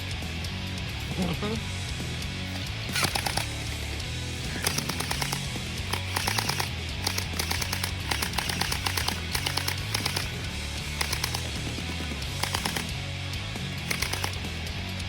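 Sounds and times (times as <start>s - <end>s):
background music with bass: 0.0s - 15.0s
rapid clicking toy blaster shots: 2.9s - 3.8s, 4.5s - 13.0s, 13.8s - 14.7s.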